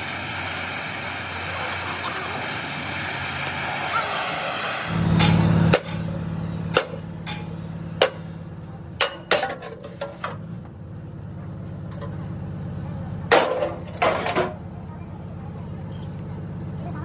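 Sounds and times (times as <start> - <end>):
low machine hum: 0.0 - 9.7.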